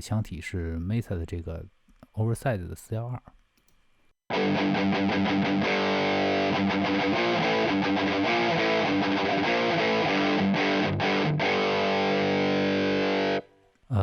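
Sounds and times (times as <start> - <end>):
distorted electric guitar chords: 4.3 - 13.5.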